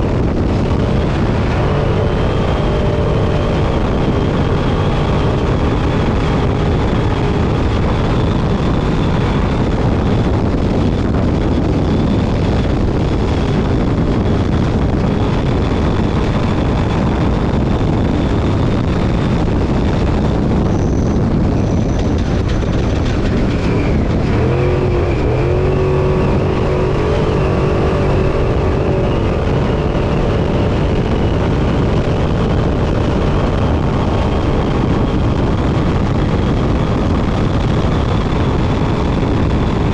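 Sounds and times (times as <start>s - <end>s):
rough terrain noise: 0.0s - 39.9s
truck engine roar: 0.0s - 39.9s
wind noise: 0.0s - 39.9s.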